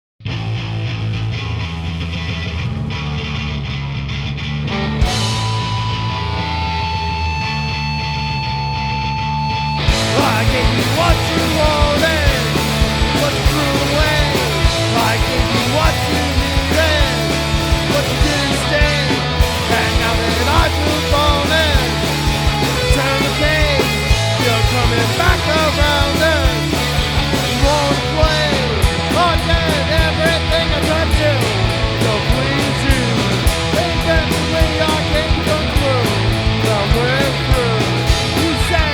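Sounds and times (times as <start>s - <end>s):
bass guitar: 0.0s - 38.9s
drums: 0.2s - 38.9s
electric guitar: 0.2s - 38.9s
rock band playing: 0.2s - 38.9s.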